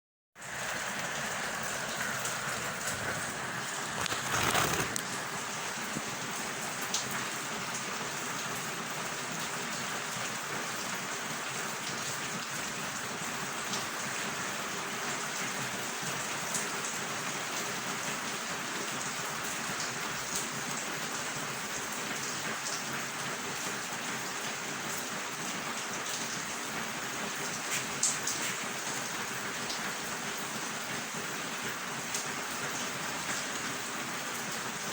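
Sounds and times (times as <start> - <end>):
steady rain hiss: 0.4 - 34.9
raindrop clicks: 2.0 - 5.2.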